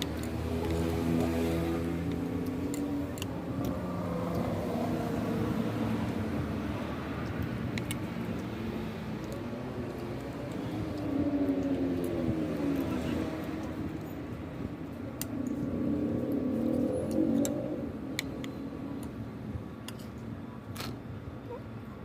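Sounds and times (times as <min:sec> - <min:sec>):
vehicle engine passing: 0:00.0 - 0:19.1
sharp clicks: 0:07.2 - 0:08.5.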